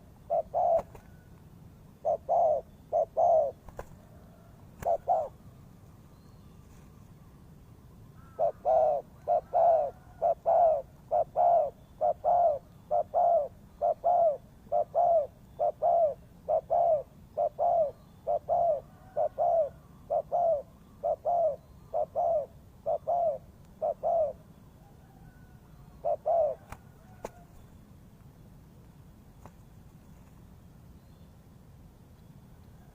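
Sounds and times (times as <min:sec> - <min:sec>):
dove cooing: 0:00.0 - 0:01.3, 0:01.9 - 0:05.6, 0:08.2 - 0:27.7.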